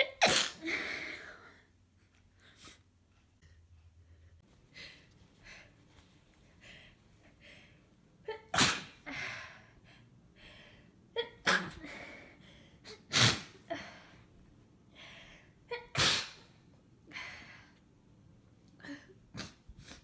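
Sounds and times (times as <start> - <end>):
person sneezing: 0.0 - 1.1, 8.5 - 9.2, 11.2 - 11.9, 12.9 - 13.8, 15.8 - 16.5.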